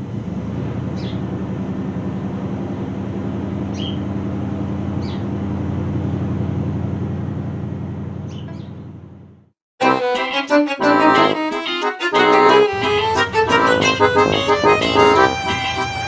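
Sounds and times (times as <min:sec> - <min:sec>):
engine running: 0:00.0 - 0:09.5, 0:10.8 - 0:16.0.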